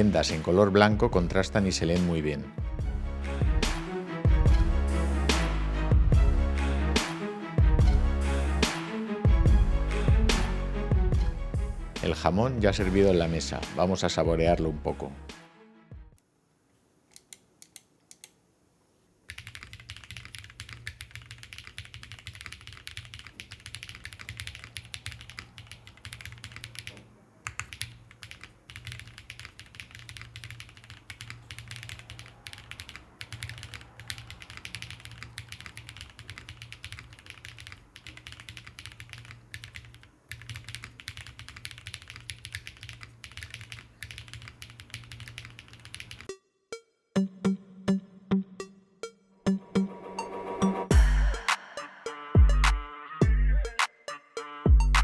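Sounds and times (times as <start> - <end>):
typing on mechanical keyboard: 19.3 - 46.3.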